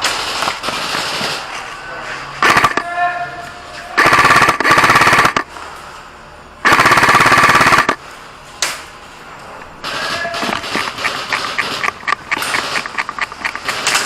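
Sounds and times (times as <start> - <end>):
airsoft rifle firing bursts: 2.4 - 2.8, 4.0 - 5.5, 6.6 - 8.0, 9.8 - 14.0.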